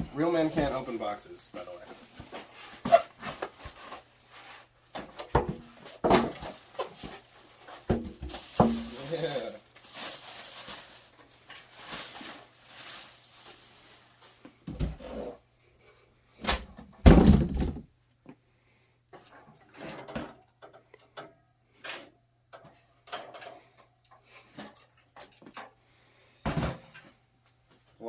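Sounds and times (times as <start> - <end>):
cardboard and foam rustling: 0.0 - 15.4.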